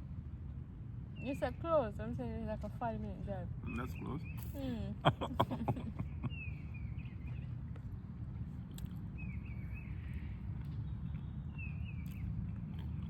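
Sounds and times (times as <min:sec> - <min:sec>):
low outdoor rumble: 0:00.0 - 0:13.0
bird chirping: 0:03.6 - 0:04.6, 0:06.0 - 0:07.6.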